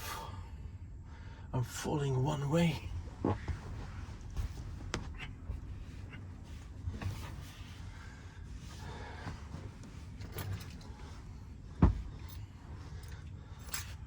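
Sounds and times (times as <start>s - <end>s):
low steady rumble: 0.0s - 14.0s
rustling on a bed: 2.5s - 14.0s
dull thump: 11.7s - 12.4s.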